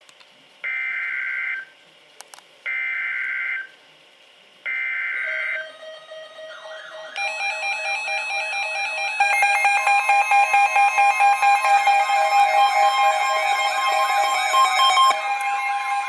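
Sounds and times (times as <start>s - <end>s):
screeching digital data tones: 4.7s - 16.0s
repeating electronic melody: 4.8s - 16.0s
steady tone: 4.9s - 16.0s.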